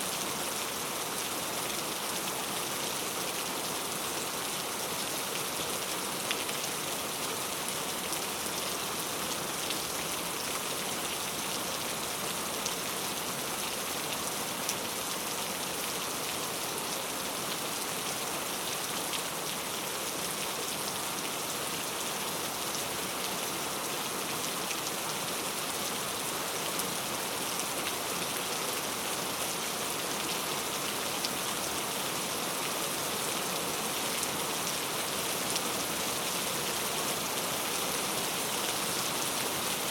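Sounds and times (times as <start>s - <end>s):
heavy rain falling: 24.3s - 39.9s.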